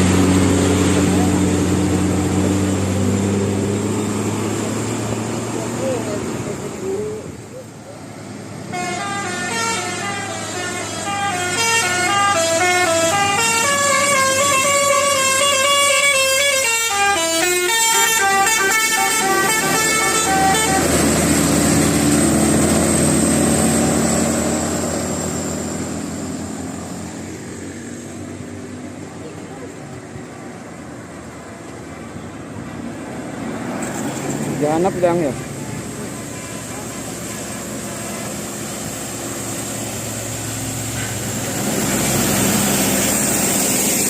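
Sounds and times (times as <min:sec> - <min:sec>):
bus engine rumble: 0:00.0 - 0:44.0
bus musical horn tune: 0:08.7 - 0:21.7.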